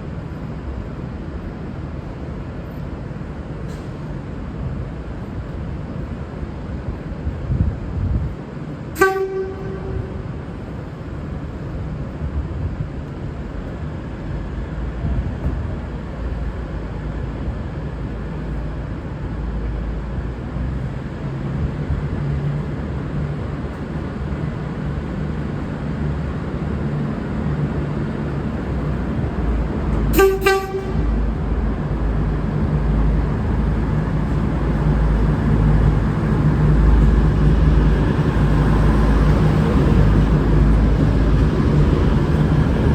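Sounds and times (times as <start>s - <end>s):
train horn blasts: 9.0s - 10.4s, 30.1s - 31.3s
diesel engine rumble: 9.5s - 42.9s.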